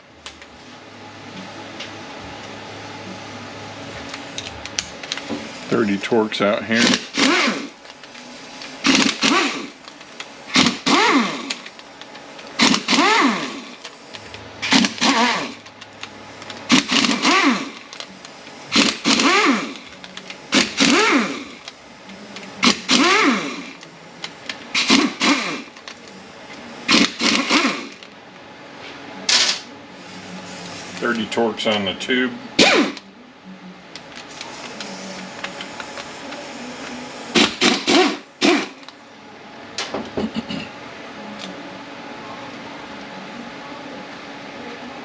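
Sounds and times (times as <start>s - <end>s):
power driver motor whine: 1.3s - 28.2s, 30.2s - 33.1s.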